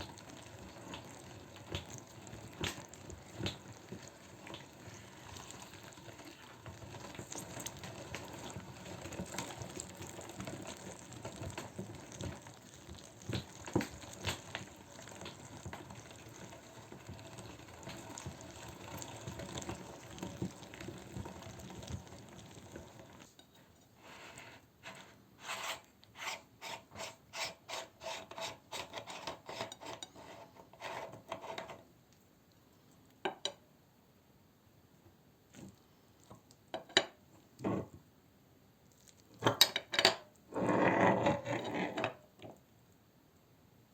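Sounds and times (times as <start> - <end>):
meat grinder scraping: 0.0 - 22.9, 40.5 - 42.1.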